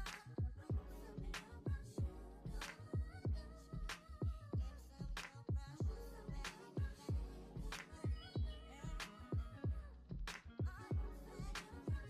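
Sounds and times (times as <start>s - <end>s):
deep kick drums: 3.0s - 3.4s, 4.2s - 6.0s.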